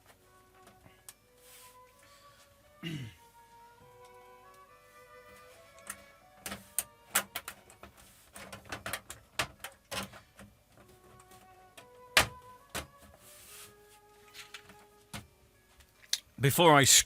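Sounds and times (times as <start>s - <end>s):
faint background music: 0.0s - 17.0s
clicks and knocks of handled parts: 5.7s - 12.9s.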